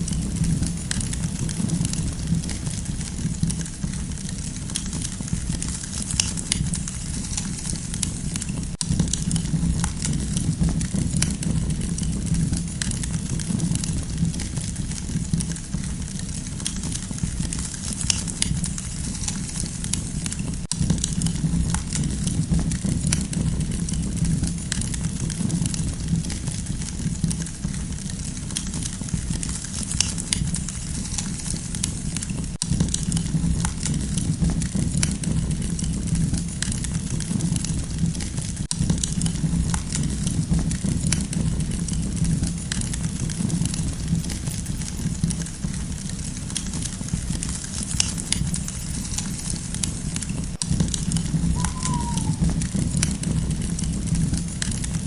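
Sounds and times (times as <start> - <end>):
campfire crackling and popping: 0.0 - 3.6, 38.8 - 55.0
low rumble of flames: 0.0 - 4.4, 38.7 - 51.6, 52.2 - 55.0.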